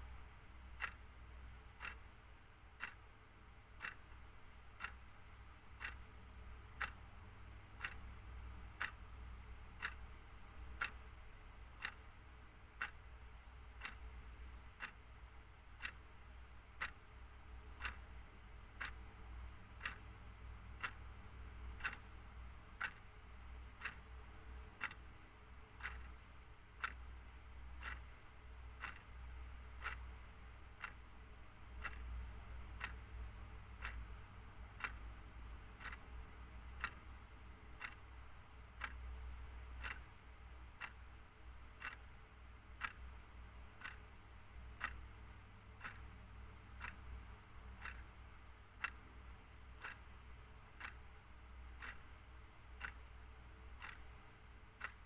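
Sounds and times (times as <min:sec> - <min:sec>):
clock ticking: 0:00.0 - 0:55.0
faint low hum: 0:00.0 - 0:55.0.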